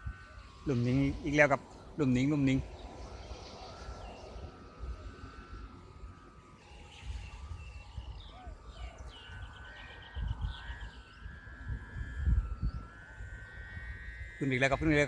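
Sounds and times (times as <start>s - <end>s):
kite humming in wind: 0.0s - 15.0s
wind rumbling on microphone: 0.0s - 15.0s
bird chirping: 6.6s - 13.6s.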